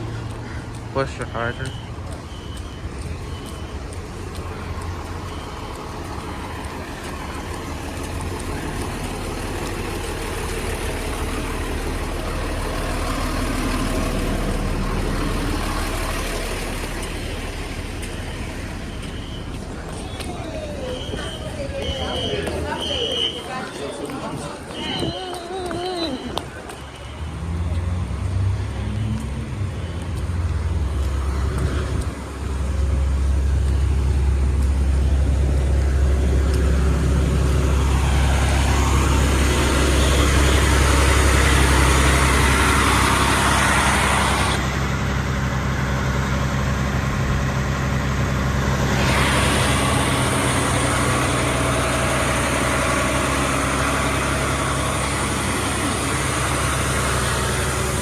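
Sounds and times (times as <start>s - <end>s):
diesel engine rumbling: 0.0s - 58.0s
rushing noise: 26.8s - 58.0s.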